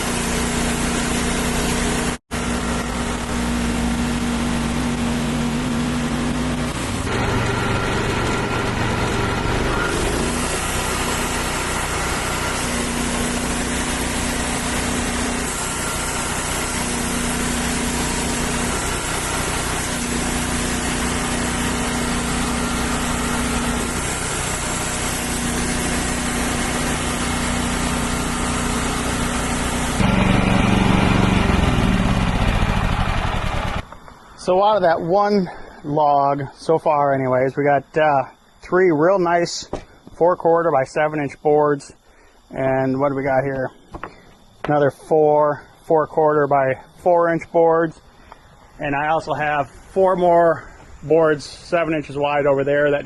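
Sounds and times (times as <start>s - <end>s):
band sawmill cutting log: 0.0s - 34.7s.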